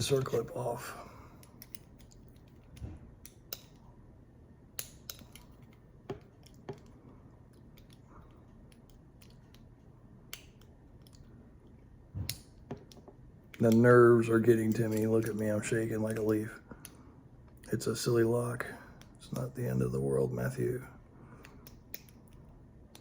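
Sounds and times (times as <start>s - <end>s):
small metal clicks and taps: 1.4s - 3.9s, 4.8s - 9.7s.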